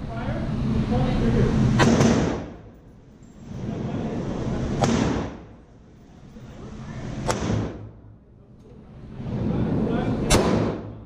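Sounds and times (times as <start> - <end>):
gunshots with echo: 1.8 - 2.6.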